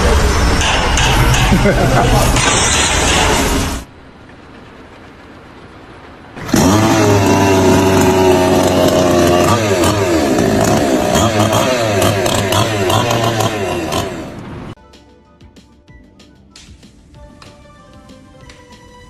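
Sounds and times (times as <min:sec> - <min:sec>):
steady background noise: 0:00.0 - 0:14.8
small petrol engine revving: 0:06.4 - 0:14.8.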